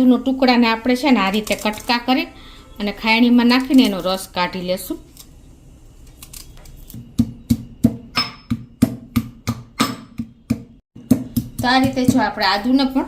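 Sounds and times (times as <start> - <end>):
pestle pounding in a mortar: 7.0 - 12.7.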